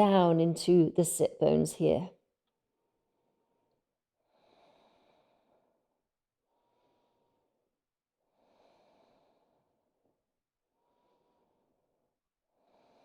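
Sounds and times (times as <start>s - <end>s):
person breathing deeply: 3.0s - 10.0s, 10.7s - 13.0s.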